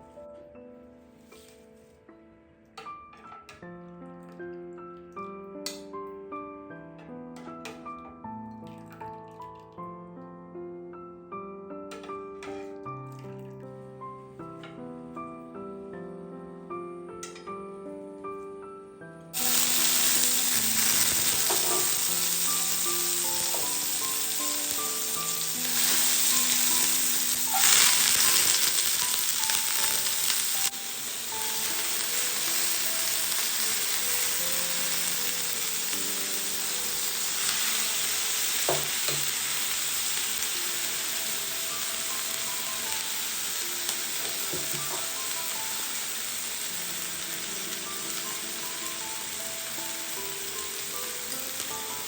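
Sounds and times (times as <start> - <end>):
background music: 0.0 - 52.0
food sizzling in a hot pan: 19.4 - 52.0.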